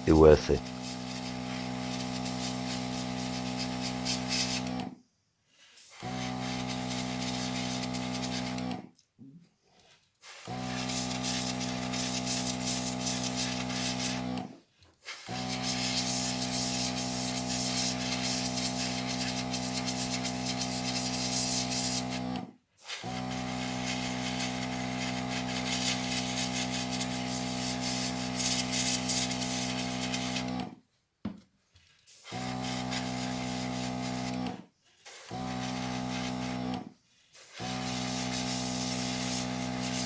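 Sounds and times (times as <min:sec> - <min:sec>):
airbrush hissing: 0:00.6 - 0:04.7, 0:05.8 - 0:08.6, 0:10.3 - 0:14.2, 0:15.1 - 0:22.2, 0:23.0 - 0:30.5, 0:32.4 - 0:34.4, 0:35.0 - 0:36.6, 0:37.3 - 0:40.0
compressor electric hum: 0:37.6 - 0:40.0.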